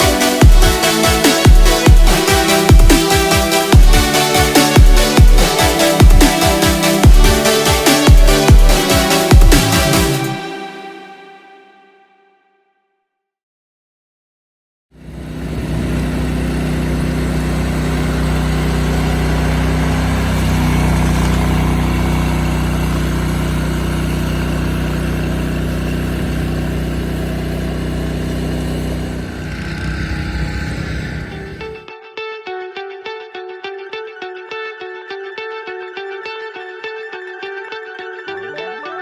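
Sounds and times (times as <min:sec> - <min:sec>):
large engine running: 0:00.0 - 0:10.4, 0:15.0 - 0:31.8.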